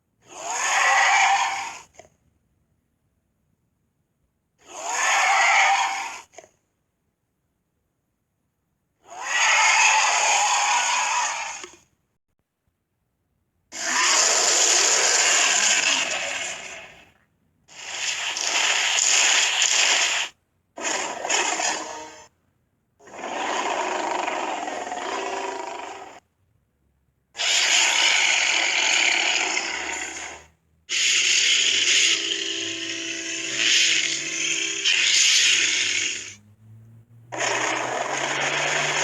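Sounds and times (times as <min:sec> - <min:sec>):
harsh raspy dinosaur roars: 0:00.3 - 0:02.0, 0:04.6 - 0:06.5, 0:09.0 - 0:11.8, 0:13.7 - 0:17.0, 0:23.0 - 0:26.2, 0:27.4 - 0:36.4, 0:37.3 - 0:39.0.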